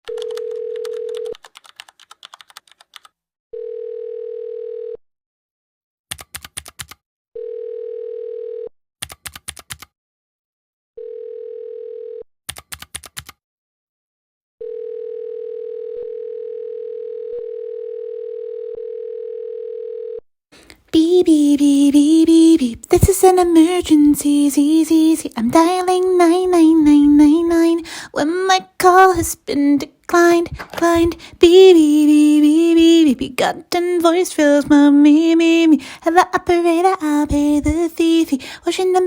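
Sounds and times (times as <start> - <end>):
telephone dial tone: 0.1 - 1.8, 3.6 - 5.0, 7.4 - 8.7, 11.0 - 12.2, 14.6 - 20.2.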